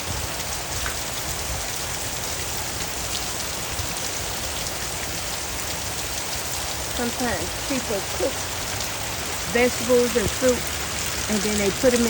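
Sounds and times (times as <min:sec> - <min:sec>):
heavy rain hissing: 0:00.0 - 0:12.0.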